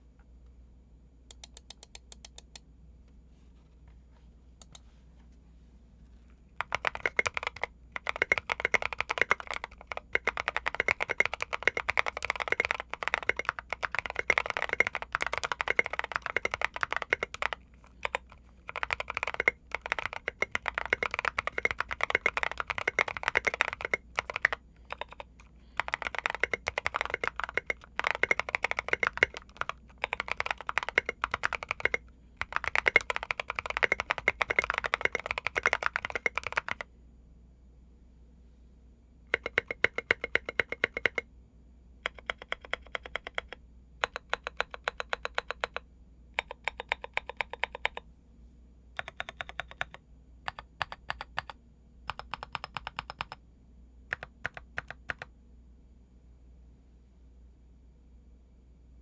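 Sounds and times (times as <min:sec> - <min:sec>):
typing on mechanical keyboard: 0:06.6 - 0:36.9, 0:39.3 - 0:41.2, 0:42.0 - 0:45.8, 0:46.4 - 0:48.0, 0:49.0 - 0:53.4, 0:54.1 - 0:55.3.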